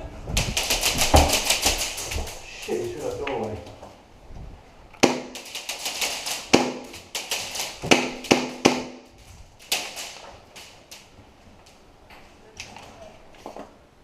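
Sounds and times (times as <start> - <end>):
airsoft gun shots: 0.4 - 2.3, 5.0 - 9.1.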